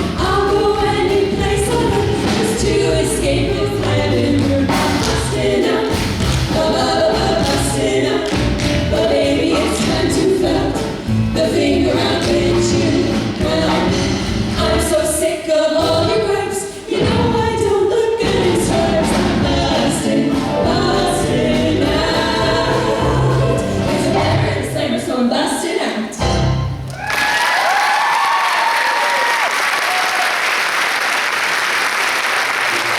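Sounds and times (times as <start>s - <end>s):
musical accompaniment with bass line: 0.0s - 24.8s, 26.2s - 27.0s
voices singing in harmony: 0.0s - 26.2s.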